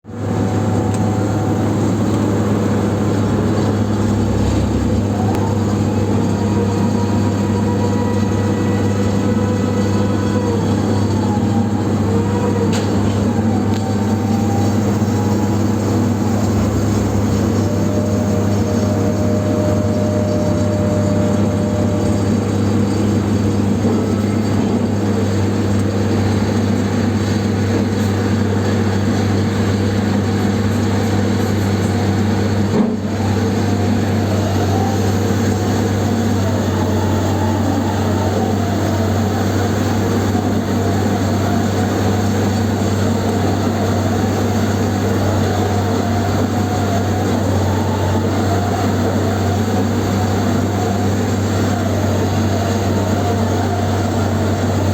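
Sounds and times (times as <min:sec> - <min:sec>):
large machine humming: 0:00.0 - 0:54.9.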